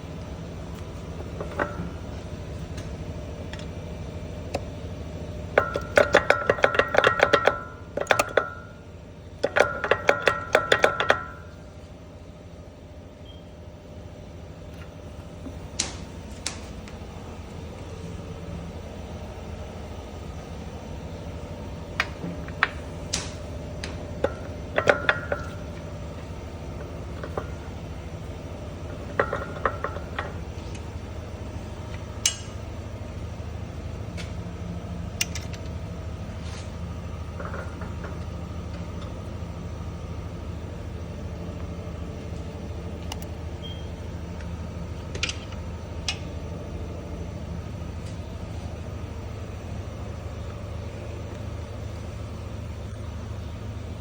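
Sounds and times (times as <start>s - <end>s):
steady low hum: 0.0s - 54.0s
truck engine idling: 0.0s - 54.0s
sharp clicks from truck: 31.9s - 32.6s.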